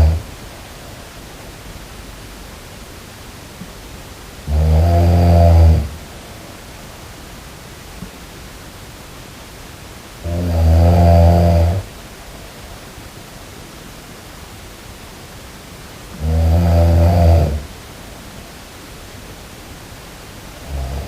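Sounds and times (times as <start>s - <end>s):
person snoring: 0.0s - 0.3s, 4.4s - 6.0s, 10.2s - 11.9s, 16.2s - 17.7s, 20.6s - 21.0s
steady hiss: 0.0s - 21.0s.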